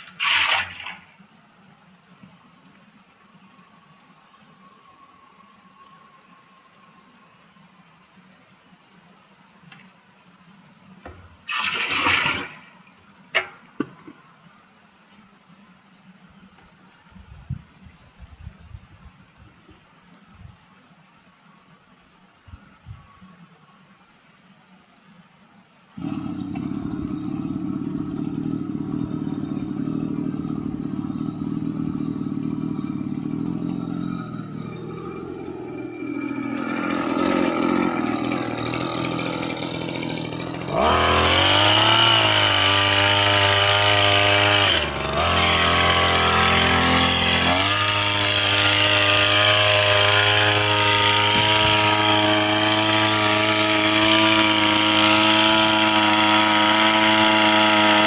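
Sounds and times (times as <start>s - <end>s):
small petrol engine running: 26.0s - 58.0s.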